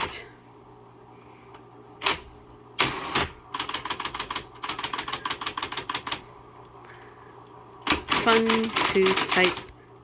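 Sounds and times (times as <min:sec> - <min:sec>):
typewriter motor humming: 0:02.0 - 0:06.2, 0:07.8 - 0:09.7.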